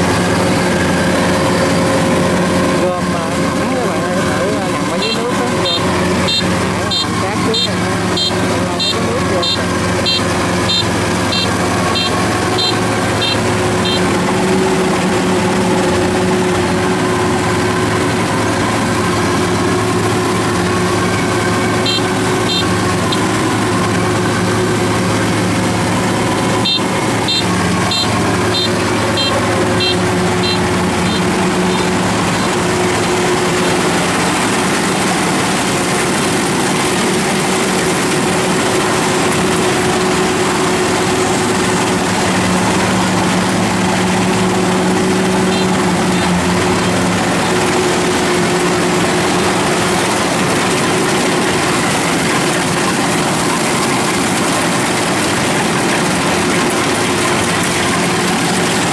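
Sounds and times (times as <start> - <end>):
combine harvester engine running: 0.0 - 58.9
high electronic beeps: 4.8 - 14.1, 21.8 - 23.3, 26.6 - 32.6.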